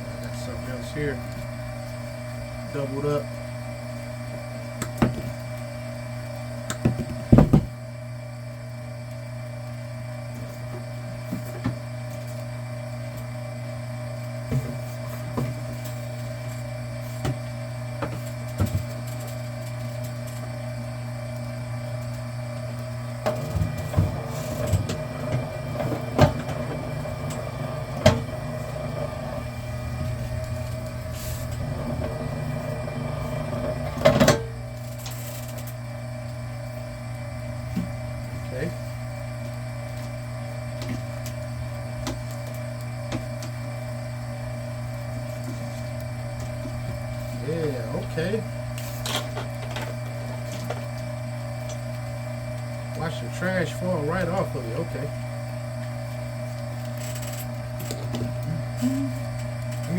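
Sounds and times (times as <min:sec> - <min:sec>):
machine motor hum: 0:00.0 - 0:59.9
cable feeding through machine: 0:23.0 - 0:35.8.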